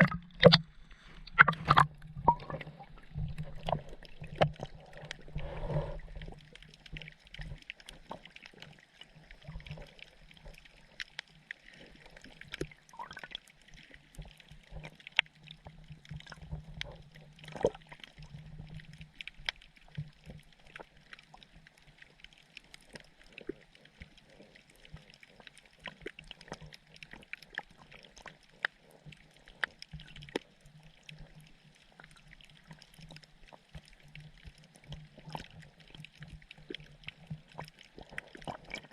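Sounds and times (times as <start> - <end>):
crackle of sharp clicks: 0.0 - 0.7.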